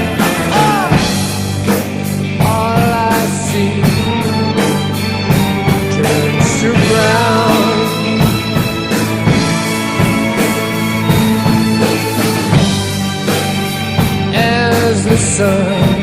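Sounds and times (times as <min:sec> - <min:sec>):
rock music: 0:00.0 - 0:16.0.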